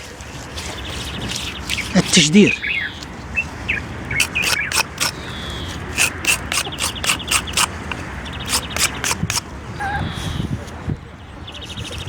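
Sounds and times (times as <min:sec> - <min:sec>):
sharp clicks and scratches: 0:00.6 - 0:02.5, 0:04.1 - 0:09.5.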